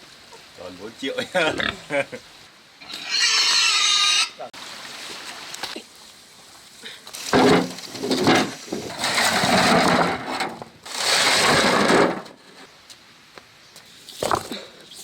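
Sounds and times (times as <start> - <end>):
pig squealing: 2.8 - 4.5.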